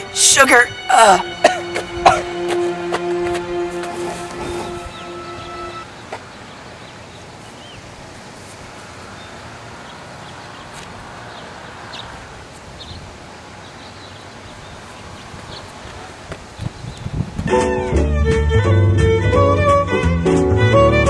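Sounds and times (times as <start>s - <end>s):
wind rustling leaves: 0.0s - 18.0s
bird chirps: 4.5s - 7.9s.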